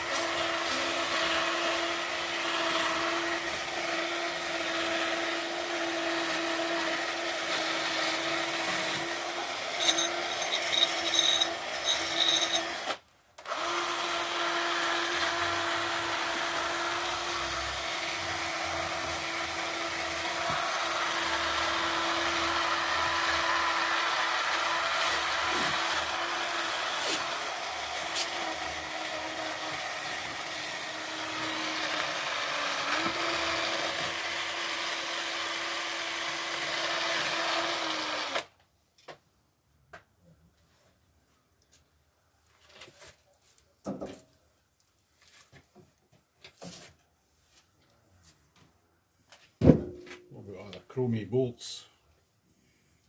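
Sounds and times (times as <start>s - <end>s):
drill motor whine: 7.8s - 29.5s.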